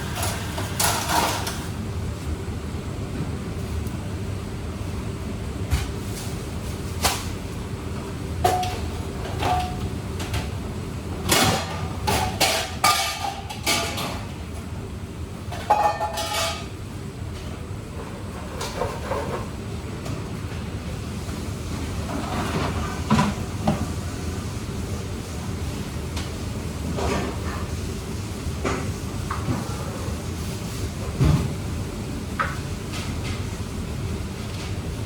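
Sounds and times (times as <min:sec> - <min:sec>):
dishes and utensils clinking: 0:11.3 - 0:14.3, 0:15.6 - 0:16.7.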